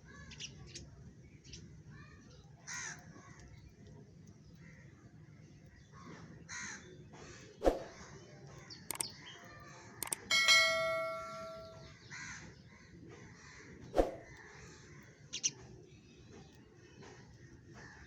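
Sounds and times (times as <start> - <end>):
metallic clang: 10.0 - 11.9.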